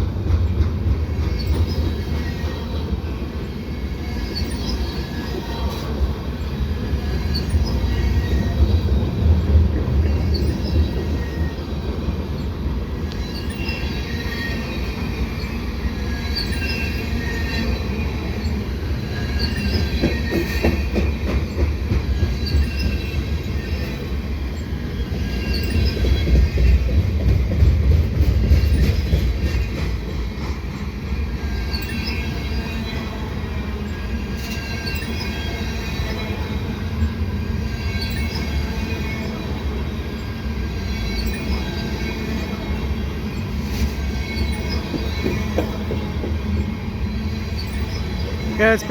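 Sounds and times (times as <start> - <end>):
train wheels rumbling on rail: 0.0 - 48.9
high wheel squeals: 10.1 - 26.9, 28.5 - 48.9.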